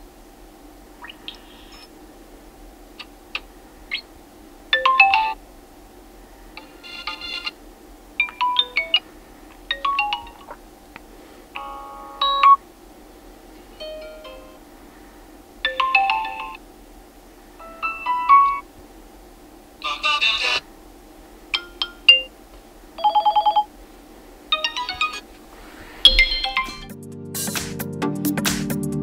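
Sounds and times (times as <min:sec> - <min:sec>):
electronic ringtone melodies: 0:04.8 - 0:05.4, 0:06.6 - 0:07.5, 0:08.2 - 0:09.0, 0:09.7 - 0:10.5, 0:11.6 - 0:12.6, 0:13.8 - 0:14.6, 0:15.7 - 0:16.6, 0:17.6 - 0:18.6, 0:24.6 - 0:25.2, 0:26.0 - 0:26.9.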